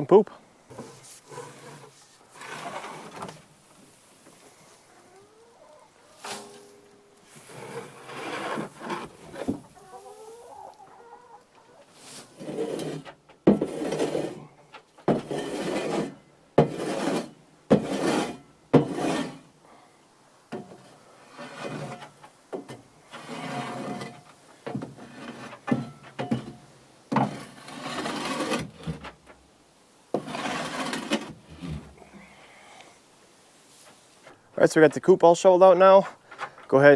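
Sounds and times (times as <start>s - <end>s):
shovel scraping coop floor: 0.7s - 19.5s, 20.5s - 29.4s, 30.1s - 32.1s, 33.6s - 34.4s
chickens clucking: 4.1s - 7.1s, 9.1s - 12.2s.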